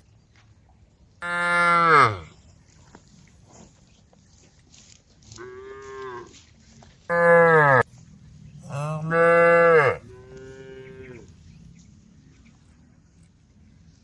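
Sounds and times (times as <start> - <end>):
cattle mooing: 1.2 - 2.3, 7.1 - 7.8, 8.6 - 11.3.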